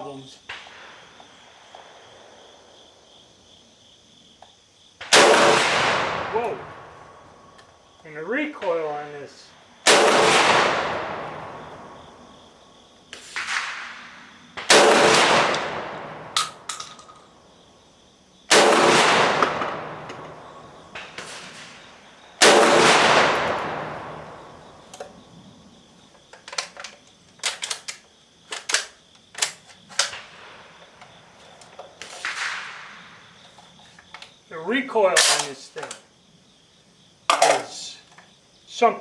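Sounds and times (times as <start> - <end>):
shotgun shots echoing: 5.0 - 7.4, 9.8 - 12.0, 13.2 - 16.8, 18.5 - 24.6, 32.2 - 33.3, 35.1 - 35.6
metallic clicks of gun handling: 16.4 - 17.3, 26.1 - 30.2, 35.2 - 36.0.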